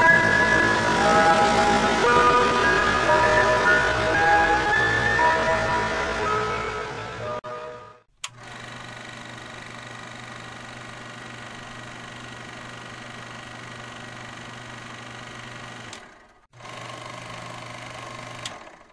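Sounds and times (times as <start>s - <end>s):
motor switch click: 8.2s - 8.5s, 15.9s - 16.1s, 18.4s - 18.6s
small motor humming: 8.2s - 18.9s.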